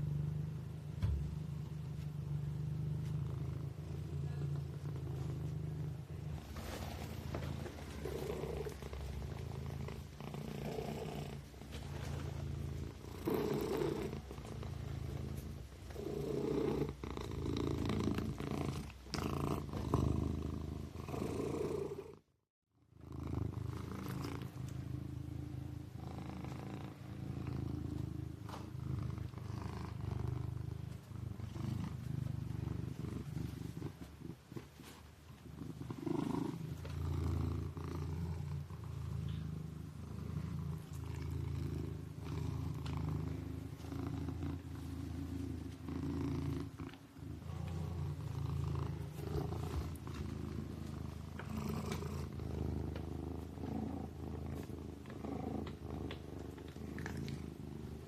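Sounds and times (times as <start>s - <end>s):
kitten purring: 0.0s - 58.0s.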